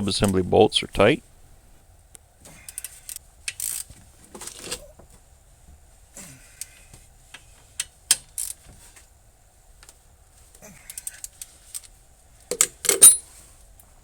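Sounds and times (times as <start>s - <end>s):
hand tools clinking on metal: 12.5s - 13.3s.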